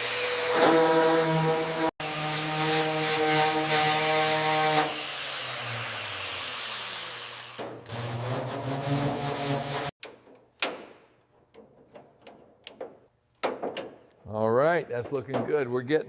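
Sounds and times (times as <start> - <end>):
power tool motor running: 4.8 - 8.2.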